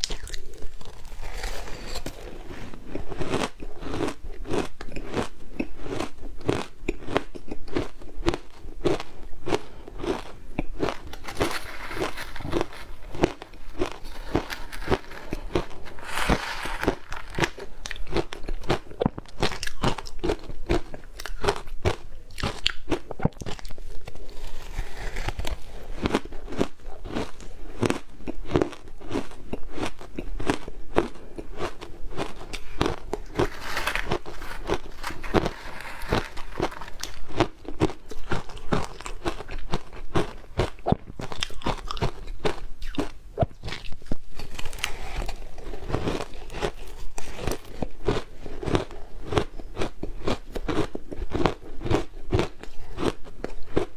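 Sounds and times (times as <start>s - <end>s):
shaved ice crunching: 0.2s - 2.5s, 10.9s - 18.3s, 32.9s - 37.7s.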